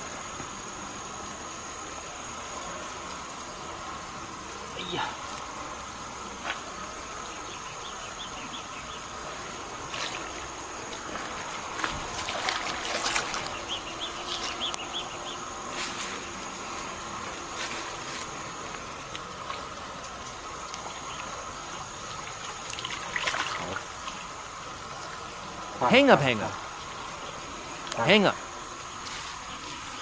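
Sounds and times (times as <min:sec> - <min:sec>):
insect drone: 0:00.0 - 0:30.0.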